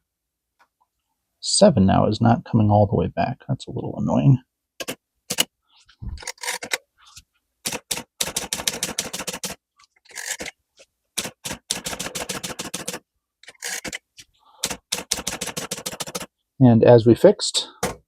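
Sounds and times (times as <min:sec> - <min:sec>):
typewriter typing: 0:04.8 - 0:05.5, 0:07.6 - 0:10.5, 0:11.2 - 0:14.0, 0:14.6 - 0:16.3.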